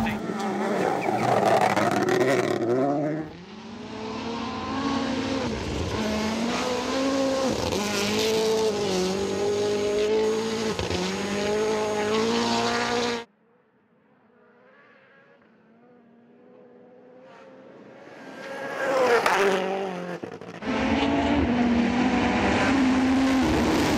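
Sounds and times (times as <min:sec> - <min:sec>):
distant engine: 0:00.0 - 0:13.3
rally car engine revving: 0:00.0 - 0:13.3, 0:14.4 - 0:23.9.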